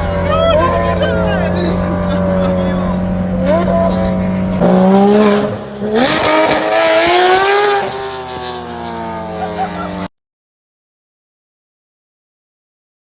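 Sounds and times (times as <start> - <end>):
sports car engine revving: 0.0 - 10.1.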